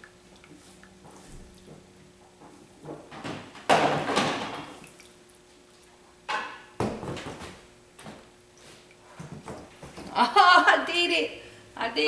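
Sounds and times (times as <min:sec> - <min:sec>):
bottles being set down: 0:02.8 - 0:04.8.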